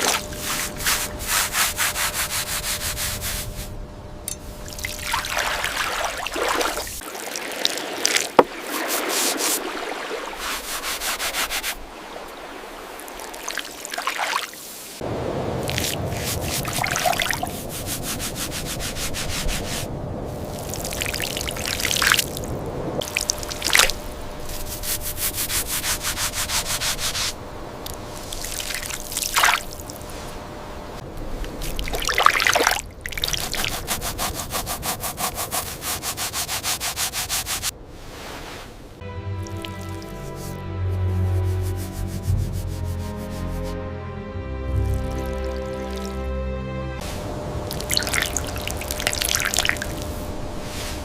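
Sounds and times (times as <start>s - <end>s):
brush scrubbing hard surface: 0.0s - 3.8s, 8.4s - 11.8s, 16.2s - 19.9s, 24.4s - 27.4s, 33.2s - 38.7s, 39.8s - 43.8s
brush sweeping scrapes: 0.0s - 3.8s, 8.2s - 12.2s, 16.1s - 19.9s, 23.8s - 27.4s, 33.2s - 39.0s, 39.7s - 43.9s, 49.8s - 51.0s.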